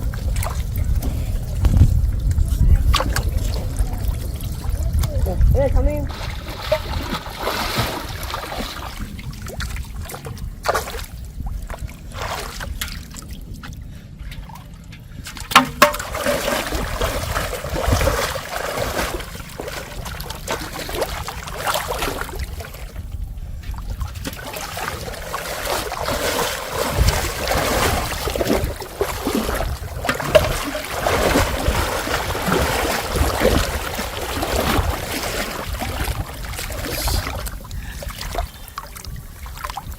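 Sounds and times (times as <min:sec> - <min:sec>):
water splashing and trickling: 0:00.0 - 0:39.9
sharp knocks: 0:15.5 - 0:16.2.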